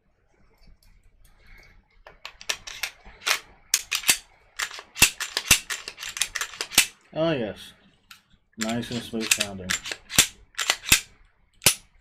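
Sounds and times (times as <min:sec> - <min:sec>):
pistol slide metallic clicks: 0:02.3 - 0:07.0, 0:08.6 - 0:11.9.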